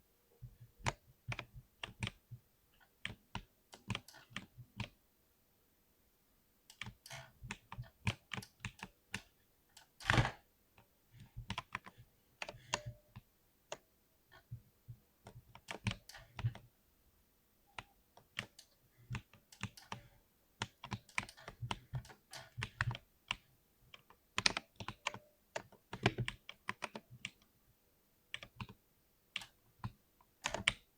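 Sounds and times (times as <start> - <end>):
typing on mechanical keyboard: 29.4 - 30.9.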